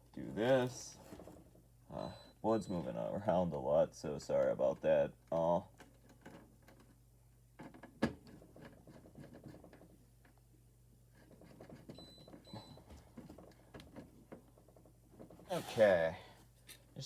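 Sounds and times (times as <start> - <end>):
faint clicks and scrapes: 5.8 - 7.0, 7.6 - 10.4, 11.1 - 15.6.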